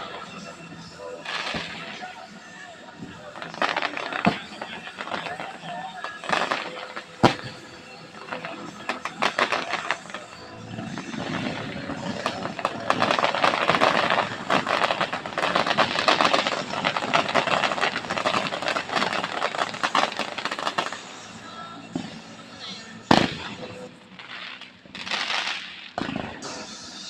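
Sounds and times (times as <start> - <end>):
fireworks crackling: 0.0 - 27.0.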